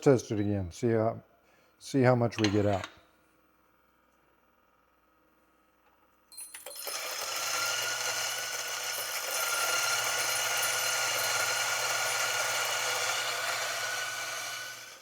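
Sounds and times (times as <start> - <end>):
coffee grinder grinding beans: 6.5 - 15.0.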